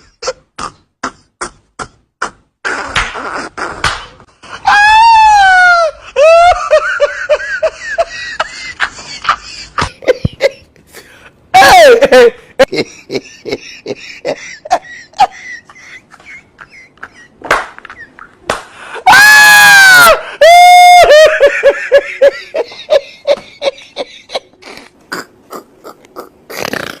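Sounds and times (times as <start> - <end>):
laughing and wheezing: 5.7 - 19.1, 20.2 - 27.0.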